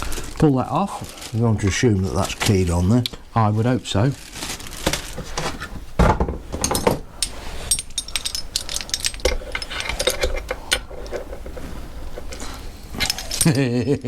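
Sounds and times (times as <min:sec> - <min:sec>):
metal parts and tools clinking: 0:06.5 - 0:14.0.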